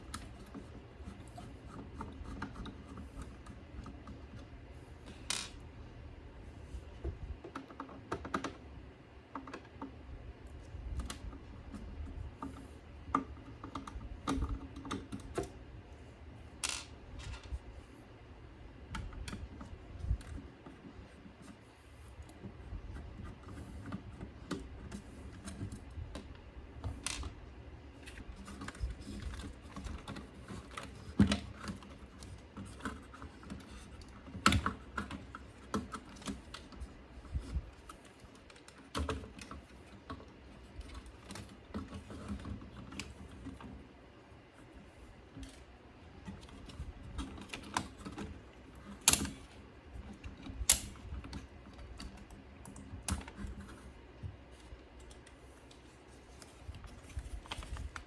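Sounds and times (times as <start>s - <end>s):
light clicks and taps of small parts: 0.0s - 5.7s, 6.9s - 15.6s, 28.0s - 43.9s, 44.6s - 58.0s.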